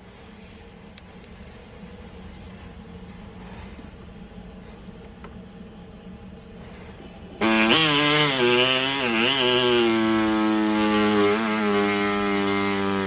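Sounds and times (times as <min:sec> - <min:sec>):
power tool cutting plastic: 0:07.4 - 0:13.0.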